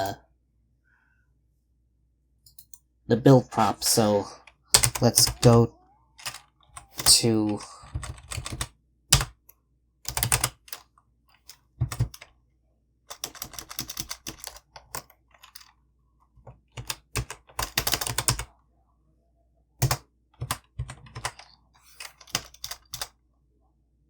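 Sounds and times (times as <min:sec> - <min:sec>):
typing on computer keyboard: 0:04.4 - 0:05.6, 0:06.2 - 0:09.4, 0:10.1 - 0:10.8, 0:11.4 - 0:12.3, 0:13.1 - 0:15.7, 0:16.5 - 0:18.5, 0:19.8 - 0:23.1.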